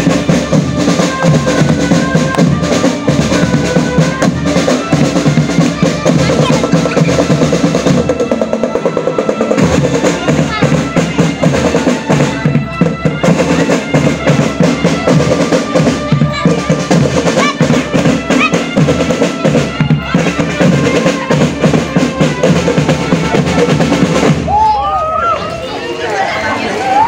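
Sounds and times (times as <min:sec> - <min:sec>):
snare drum rolls: 0:00.0 - 0:24.7
voices: 0:00.9 - 0:27.0
bass drum beat: 0:09.4 - 0:24.7.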